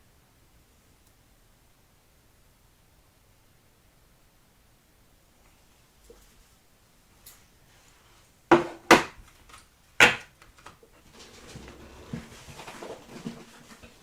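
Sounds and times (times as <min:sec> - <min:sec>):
hard objects knocking on surface: 0:08.5 - 0:09.2
shuffling: 0:10.8 - 0:14.0.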